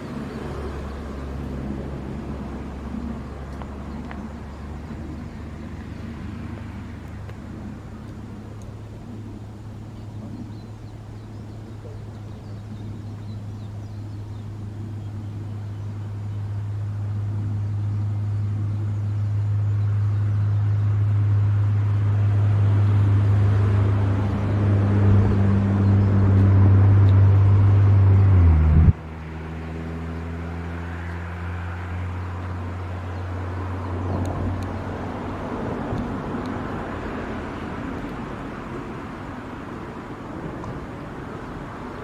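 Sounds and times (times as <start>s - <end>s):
ship diesel engine humming: 0.0s - 27.8s.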